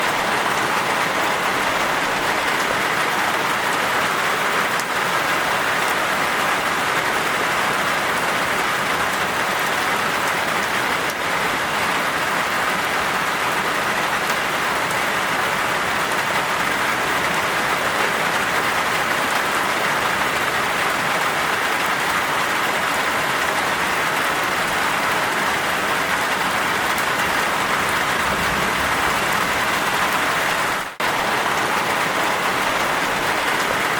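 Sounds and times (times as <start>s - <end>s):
heavy rain pouring: 0.0s - 33.9s.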